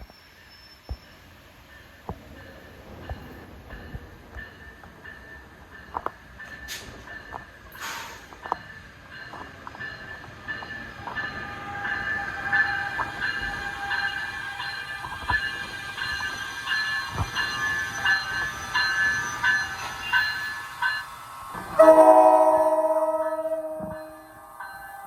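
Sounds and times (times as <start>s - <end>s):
train passing rumble: 1.1s - 25.0s
high metallic ringing: 21.6s - 25.0s.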